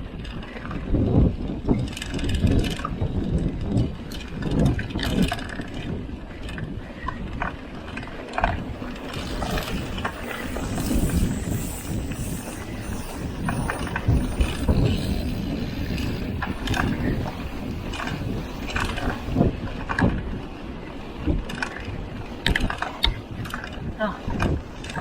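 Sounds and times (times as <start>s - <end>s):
low rumble of tyres on trail: 0.0s - 25.0s
bike chain rattling: 8.3s - 20.6s.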